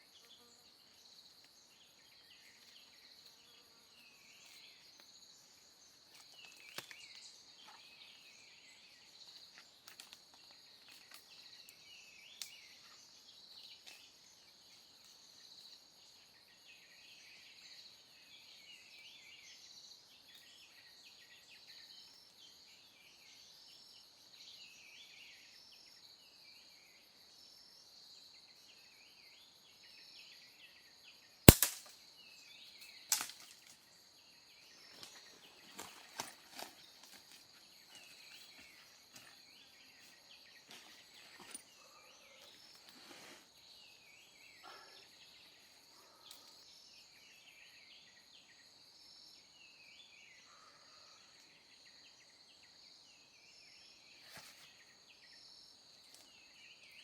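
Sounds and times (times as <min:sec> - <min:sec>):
small birds chirping: 0:00.0 - 0:50.7
insects droning: 0:00.0 - 0:57.0
loud sharp crack: 0:31.5 - 0:31.9.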